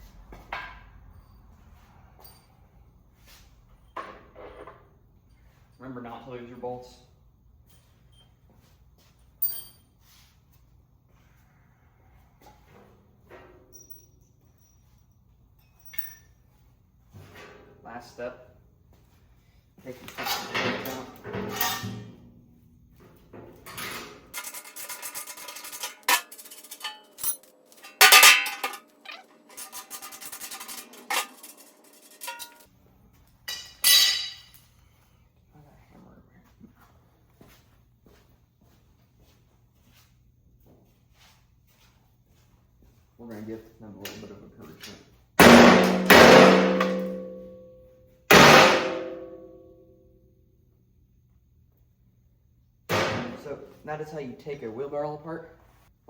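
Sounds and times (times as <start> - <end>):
sharp metallic clanks: 20.2 - 22.3, 23.6 - 32.7, 33.5 - 34.6, 45.4 - 49.8.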